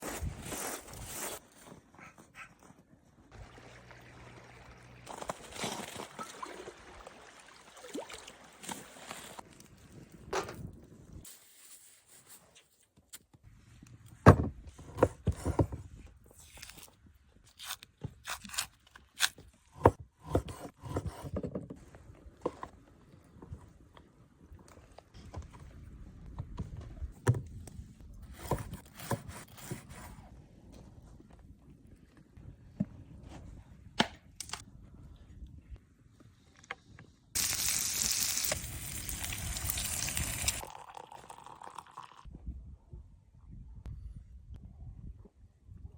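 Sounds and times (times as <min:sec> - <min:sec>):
food sizzling in a hot pan: 0:37.4 - 0:40.6.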